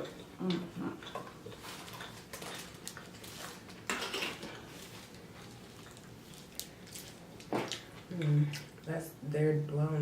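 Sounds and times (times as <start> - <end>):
rustling food containers: 1.2 - 8.1
person chewing: 4.5 - 8.9.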